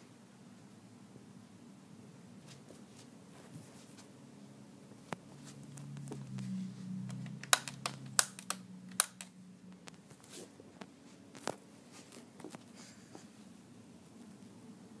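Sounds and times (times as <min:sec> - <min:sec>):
low hum: 0:05.0 - 0:10.8
sharp clicks and clacks: 0:07.1 - 0:10.0.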